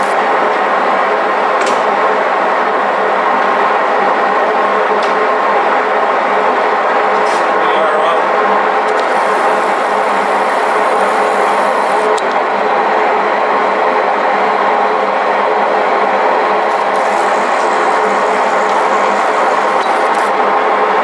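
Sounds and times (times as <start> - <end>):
lathe running: 7.5 - 13.8, 15.0 - 20.8.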